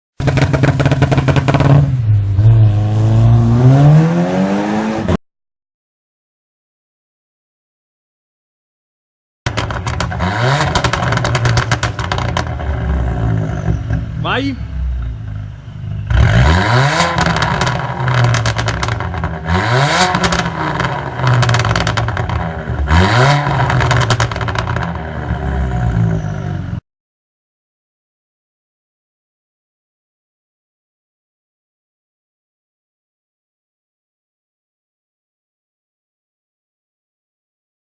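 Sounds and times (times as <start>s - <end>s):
exhaust crackling and popping: 0.2s - 1.9s, 9.4s - 14.2s, 17.0s - 25.6s
car engine revving: 0.2s - 5.2s, 9.5s - 14.2s, 14.8s - 26.8s.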